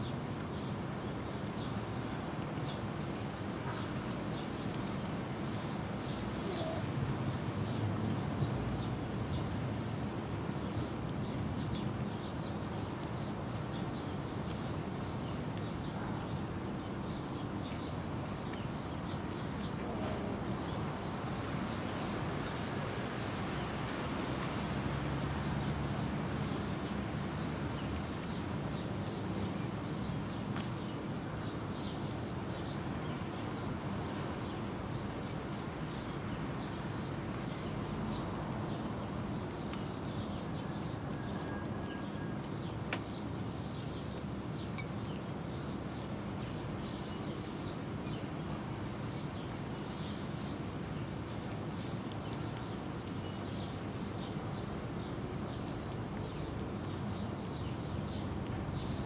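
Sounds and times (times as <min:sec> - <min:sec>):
low background noise: 0:00.0 - 0:59.0.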